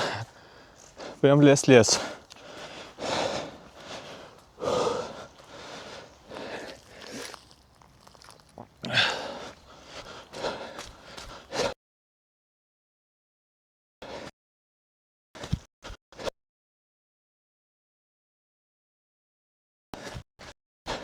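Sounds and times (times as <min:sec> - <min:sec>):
running footsteps: 0:00.0 - 0:11.7
man breathing hard: 0:00.0 - 0:11.8.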